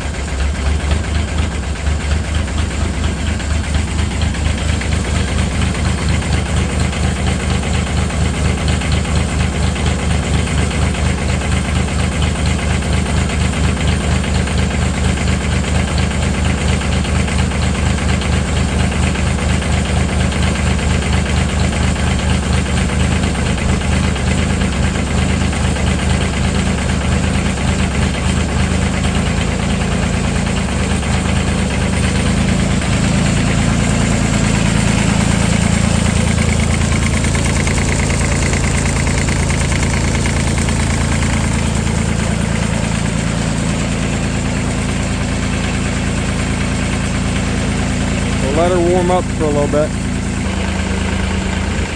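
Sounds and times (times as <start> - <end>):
diesel tractor engine idling: 0.0 - 51.9.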